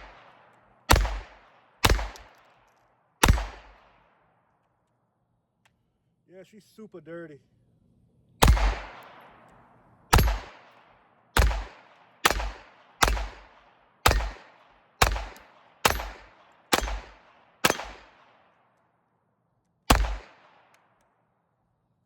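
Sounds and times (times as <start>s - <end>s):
pistol shots echoing: 0.0s - 2.4s, 3.2s - 4.1s, 8.4s - 9.5s, 10.1s - 18.5s, 19.9s - 20.7s.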